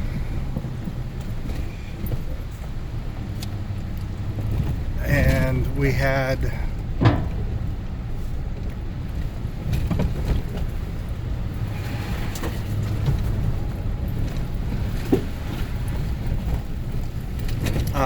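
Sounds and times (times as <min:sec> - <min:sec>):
engine and tyre rumble: 0:00.0 - 0:18.0
light knocks from vehicle: 0:07.0 - 0:11.0, 0:12.4 - 0:18.0.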